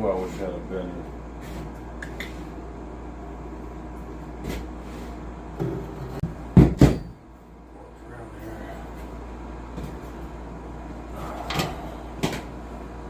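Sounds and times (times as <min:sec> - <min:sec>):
steady low hum: 0:00.0 - 0:13.0
heavy knocks on sheet metal: 0:06.5 - 0:07.1.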